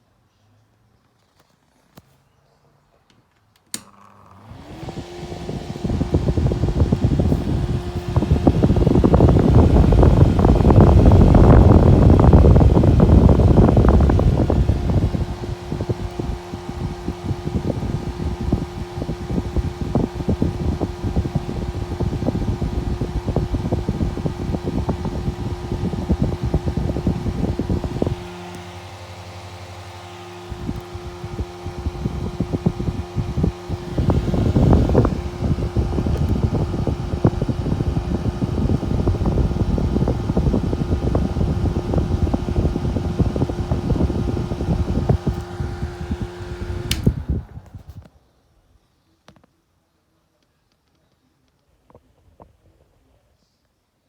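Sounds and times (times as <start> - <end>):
microwave cooling fan humming: 3.7 - 48.2
rushing air: 4.5 - 21.3.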